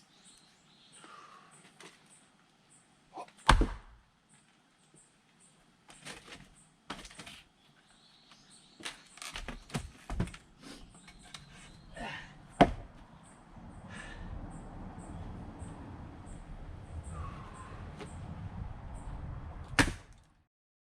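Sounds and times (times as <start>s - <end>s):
axe splitting firewood: 3.4s - 4.0s, 11.0s - 13.0s, 19.7s - 20.2s
wood knocking and clattering: 8.8s - 10.4s, 12.6s - 13.0s.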